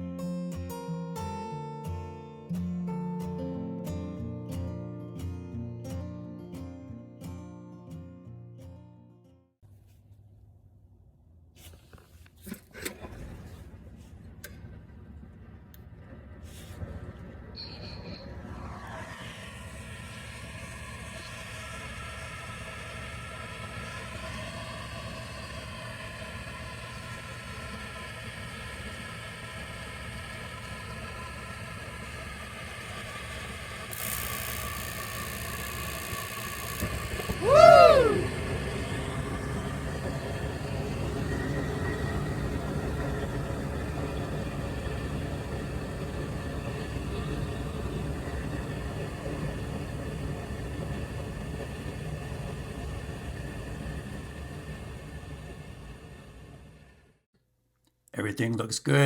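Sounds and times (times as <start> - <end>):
low burner rumble: 10.2 - 57.3
inducer fan humming: 13.7 - 57.2
burner lighting tone: 14.4 - 57.1
gas hiss: 17.7 - 57.2.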